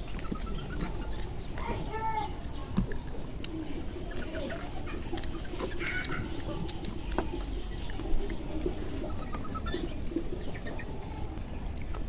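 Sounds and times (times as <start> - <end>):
birds chirping: 0.0 - 12.0
faint clicks: 2.4 - 4.4.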